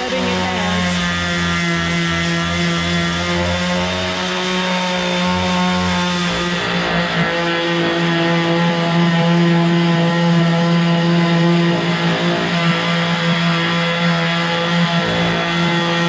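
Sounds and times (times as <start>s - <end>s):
palm sander sanding wood: 0.0s - 16.0s.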